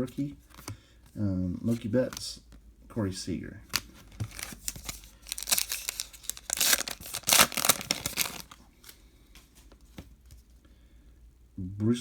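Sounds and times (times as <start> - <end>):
wrapper tearing and crinkling: 4.1 - 8.6.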